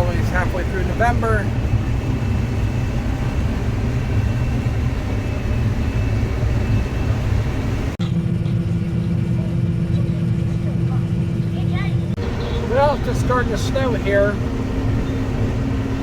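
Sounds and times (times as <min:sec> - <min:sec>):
combine harvester engine drone: 0:00.0 - 0:16.0
steady hum: 0:00.0 - 0:16.0.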